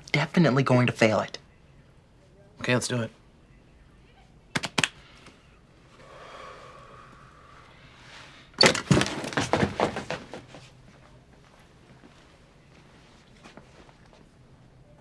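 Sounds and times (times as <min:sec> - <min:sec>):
faint hum: 0:00.0 - 0:09.4, 0:10.1 - 0:15.0
clatter of knocks and bangs: 0:08.6 - 0:10.5.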